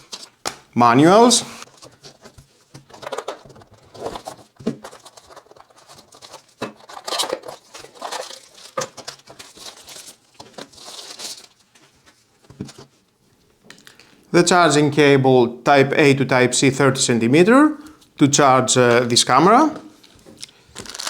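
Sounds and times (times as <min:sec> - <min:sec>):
paper and plastic crinkling: 0:00.0 - 0:00.6, 0:01.5 - 0:13.1, 0:20.0 - 0:21.0.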